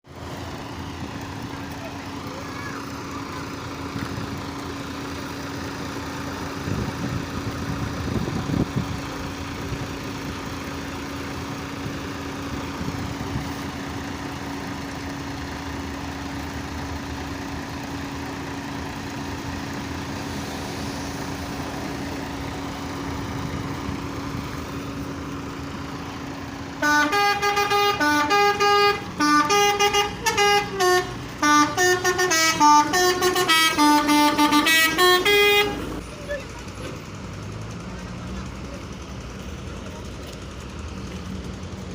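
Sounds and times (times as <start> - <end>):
vehicle engine hum: 0.0 - 41.9
musical air horns melody: 26.8 - 36.0.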